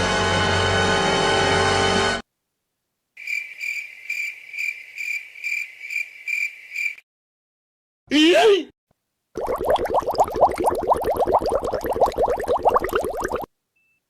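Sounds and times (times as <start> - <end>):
music: 0.0 - 2.2
crickets chirping: 3.2 - 7.0.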